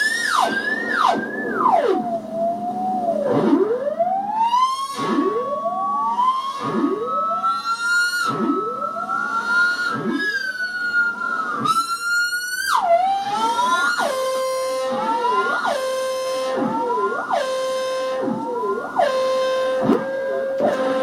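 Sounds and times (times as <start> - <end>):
held high synth tone: 13.9 - 21.0.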